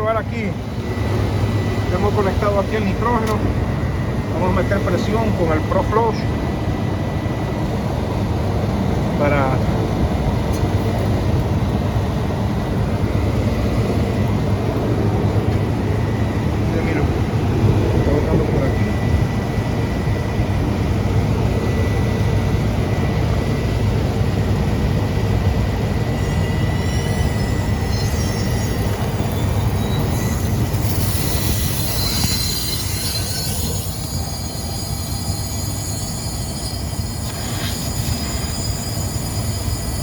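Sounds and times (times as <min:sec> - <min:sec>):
thin high whistling tones: 0:26.2 - 0:40.0.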